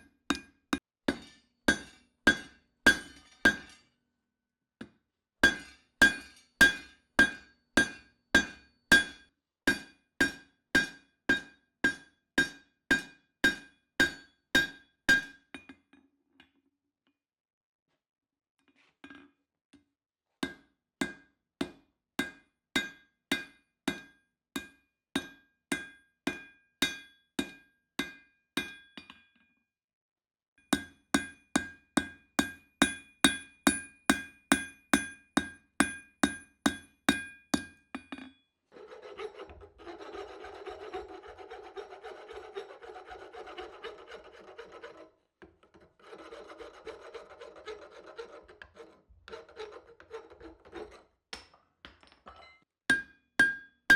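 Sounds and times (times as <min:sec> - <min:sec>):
metal rasping scrape: 0:38.7 - 0:51.1.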